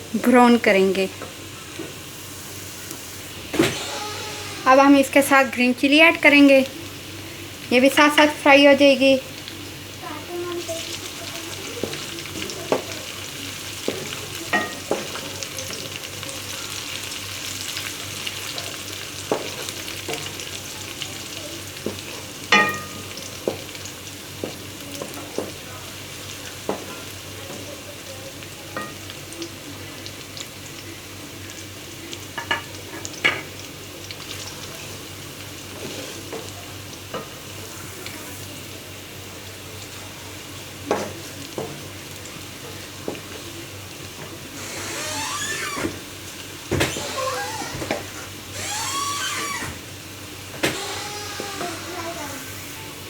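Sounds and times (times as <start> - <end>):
food sizzling in oil: 0.0 - 53.0
spoon knocking against pot: 22.5 - 23.6.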